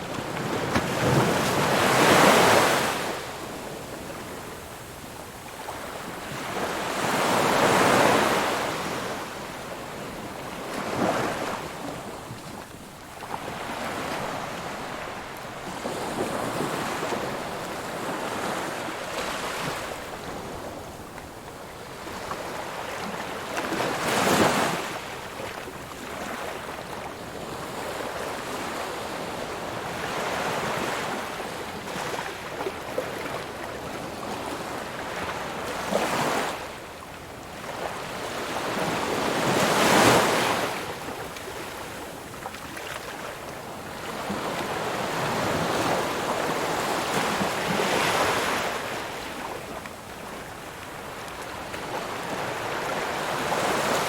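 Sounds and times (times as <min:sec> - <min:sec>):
ocean waves crashing on shore: 0:00.0 - 0:04.8.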